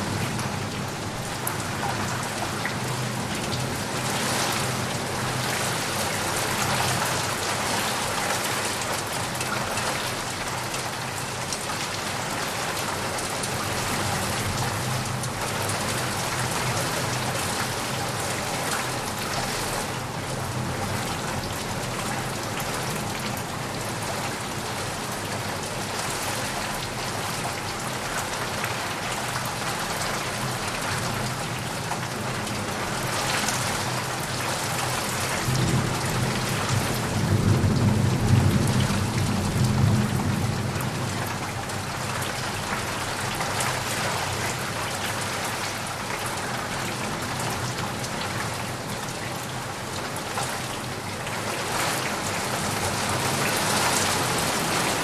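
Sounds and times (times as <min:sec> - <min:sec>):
heavy rain falling: 0:00.0 - 0:55.0
low rumble of thunder: 0:34.8 - 0:42.7.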